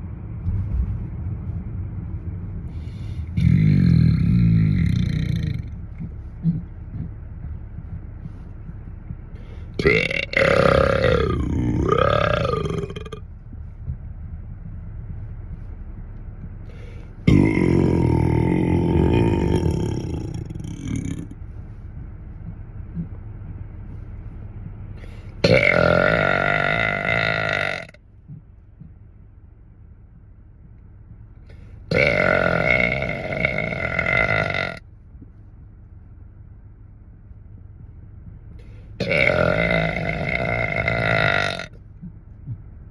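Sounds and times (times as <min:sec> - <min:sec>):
low rumble inside car: 0:00.0 - 0:42.9
man belching loudly: 0:03.4 - 0:05.8, 0:09.8 - 0:13.2, 0:17.3 - 0:21.3, 0:25.4 - 0:28.0, 0:31.9 - 0:34.8, 0:39.0 - 0:41.8.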